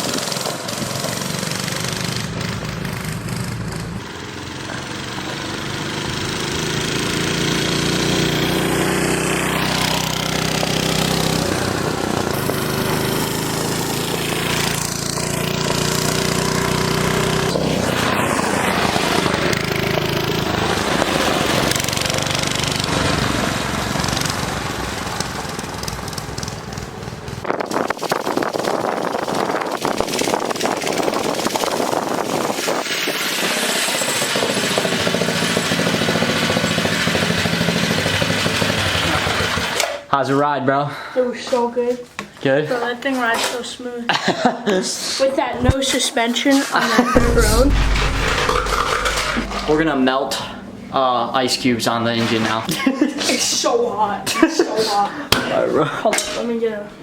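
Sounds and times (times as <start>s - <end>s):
mini bike engine revving: 0.0s - 40.1s.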